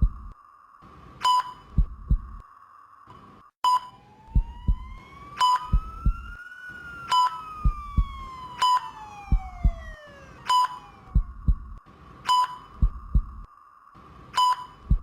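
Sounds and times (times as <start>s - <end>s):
heartbeat thumps: 0.0s - 0.4s, 1.6s - 2.4s, 4.3s - 5.0s, 5.6s - 6.4s, 7.6s - 8.4s, 9.2s - 10.1s, 11.0s - 11.8s, 12.7s - 13.5s, 14.8s - 15.0s
gliding siren-like tone: 3.8s - 11.3s.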